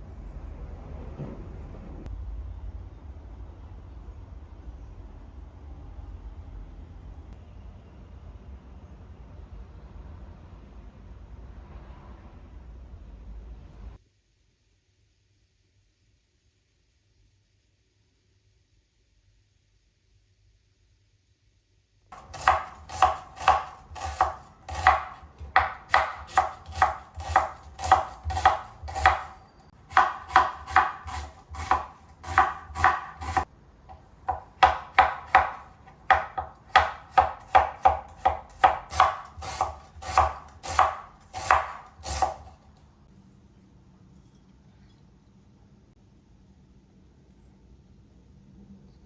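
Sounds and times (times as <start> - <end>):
knife chopping on cutting board: 22.2 - 42.5.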